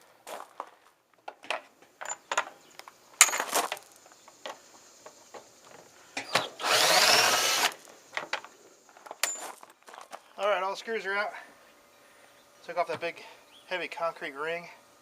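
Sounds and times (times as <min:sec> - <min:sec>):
clicks and knocks of parts: 0:01.2 - 0:06.5, 0:08.1 - 0:10.2
power drill whining: 0:06.2 - 0:07.9.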